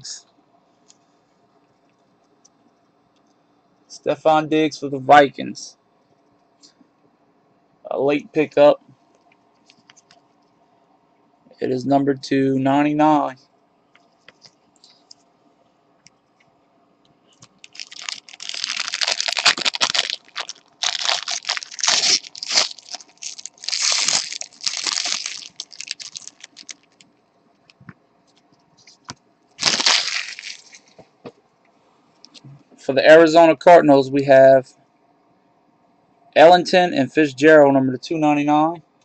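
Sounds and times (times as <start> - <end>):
plastic packaging crinkling: 17.4 - 27.2, 28.4 - 31.0.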